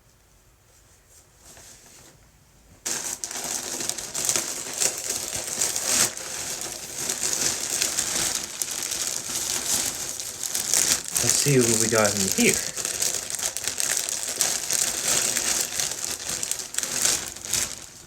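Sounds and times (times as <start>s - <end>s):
packaging crinkling and rustling: 2.9s - 18.0s.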